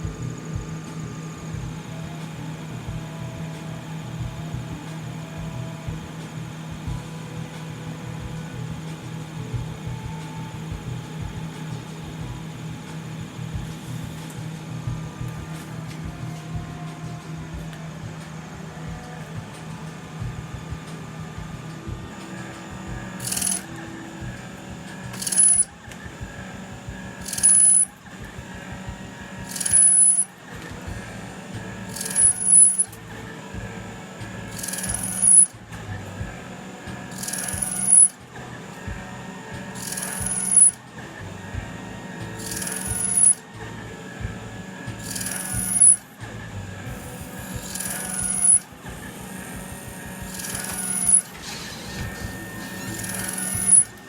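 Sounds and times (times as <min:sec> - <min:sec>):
lathe cutting noise: 0:00.0 - 0:54.0
steady machine hum: 0:00.0 - 0:54.0.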